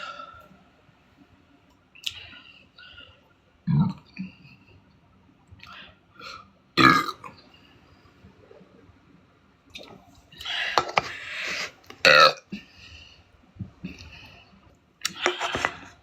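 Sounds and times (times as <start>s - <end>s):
woman burping: 6.8s - 7.3s, 12.1s - 12.4s.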